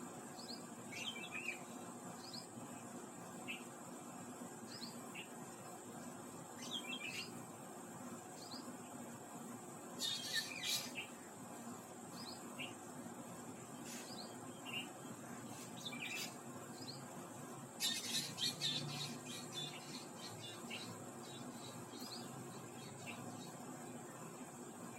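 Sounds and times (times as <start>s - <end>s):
birds chirping: 0.3s - 3.7s, 6.6s - 7.5s, 10.0s - 17.2s, 17.8s - 24.9s.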